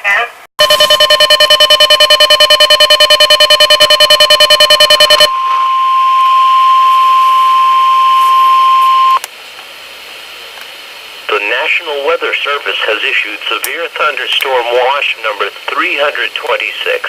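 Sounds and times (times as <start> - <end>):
harsh rapid alert beeping: 0.6 - 5.3
steady warning alarm tone: 0.6 - 9.2
faint radio hiss: 10.5 - 17.0.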